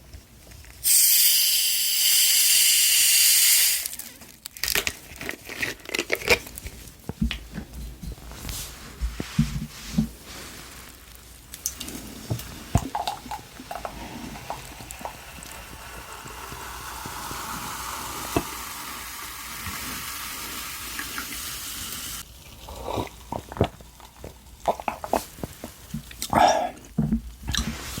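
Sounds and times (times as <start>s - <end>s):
meat sizzling in a hot pan: 0.8s - 4.0s, 14.7s - 22.2s.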